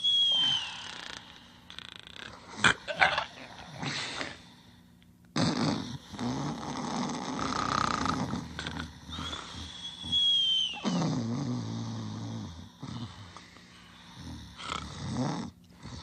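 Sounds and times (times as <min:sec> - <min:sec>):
high steady whistle: 0:00.0 - 0:01.9, 0:09.1 - 0:11.2
cartoon snoring: 0:05.3 - 0:10.2, 0:10.8 - 0:13.3, 0:14.2 - 0:16.0.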